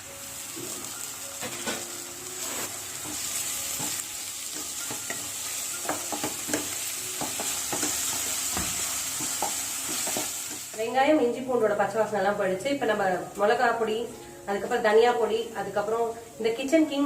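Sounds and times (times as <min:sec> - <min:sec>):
onions sizzling in hot oil: 0:00.0 - 0:11.3
utensil scraping a pan: 0:01.4 - 0:04.0.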